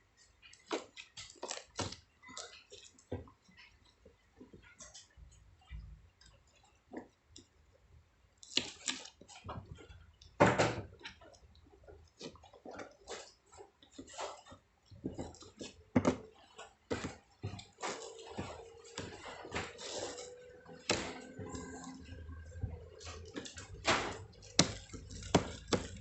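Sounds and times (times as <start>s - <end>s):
packaging rustling and crinkling: 12.9s - 26.0s.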